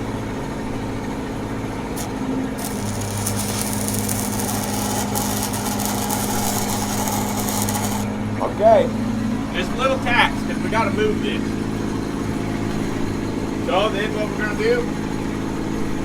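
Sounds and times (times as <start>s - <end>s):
welding arc crackling: 2.0s - 8.2s.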